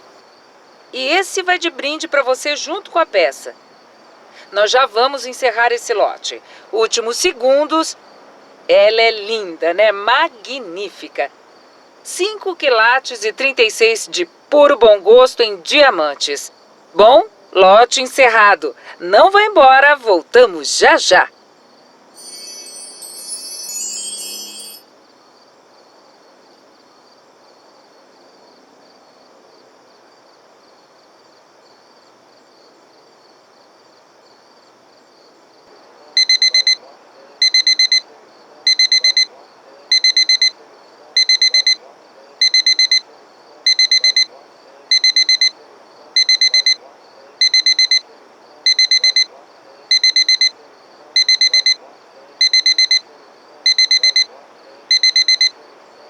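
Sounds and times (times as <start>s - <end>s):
low steady hiss: 0.0s - 56.0s
digital alarm clock beeping: 22.2s - 24.8s, 36.2s - 36.8s, 37.4s - 38.0s, 38.7s - 39.3s, 39.9s - 40.5s, 41.2s - 41.8s, 42.4s - 43.0s, 43.7s - 44.3s, 44.9s - 45.5s, 46.2s - 46.8s, 47.4s - 48.0s, 48.7s - 49.3s, 49.9s - 50.5s, 51.2s - 51.8s, 52.4s - 53.0s, 53.7s - 54.3s, 54.9s - 55.5s.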